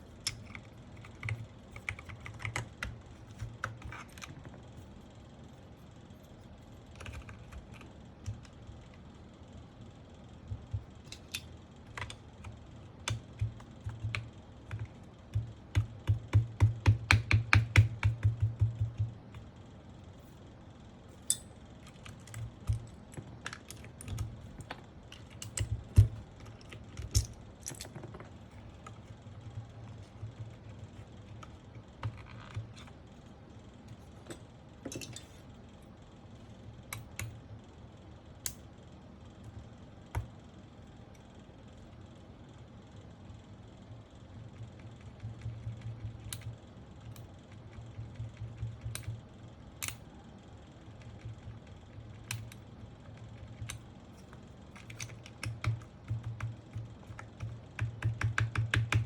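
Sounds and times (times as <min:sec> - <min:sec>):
mechanical keyboard keys clacking: 0:00.2 - 0:04.5, 0:06.8 - 0:08.6, 0:10.5 - 0:19.5, 0:21.8 - 0:28.1, 0:44.6 - 0:49.2, 0:51.0 - 0:59.0.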